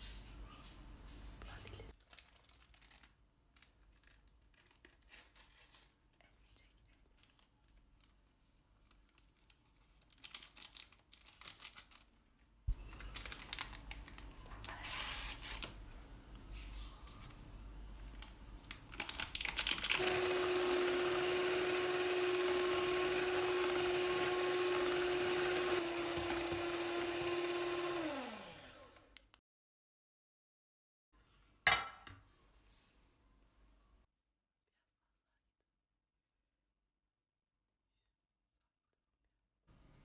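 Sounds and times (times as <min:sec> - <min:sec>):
electric blender running: 0:19.8 - 0:29.2.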